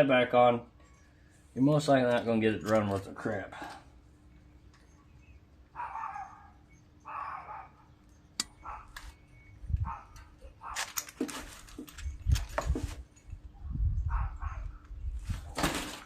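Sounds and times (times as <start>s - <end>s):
dog barking: 5.8s - 7.8s, 8.6s - 9.0s, 9.8s - 10.9s, 14.1s - 14.8s.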